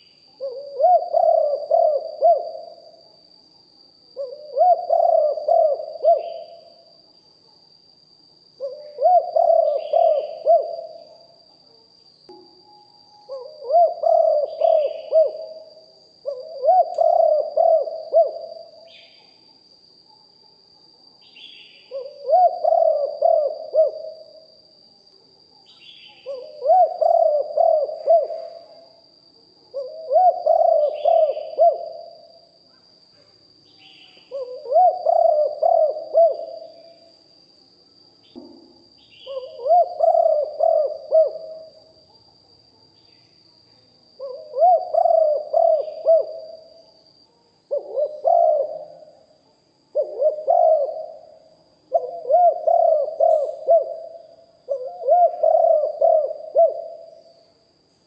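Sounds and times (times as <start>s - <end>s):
dove cooing: 0.0s - 3.1s, 4.2s - 6.8s, 8.6s - 11.3s, 13.2s - 19.1s, 21.9s - 24.4s, 25.8s - 28.9s, 29.7s - 32.3s, 34.0s - 37.0s, 39.2s - 42.2s, 44.2s - 46.7s, 47.7s - 49.2s, 49.9s - 57.3s
faint bird chirps: 0.0s - 58.0s
thin high-pitched whine: 10.8s - 13.4s.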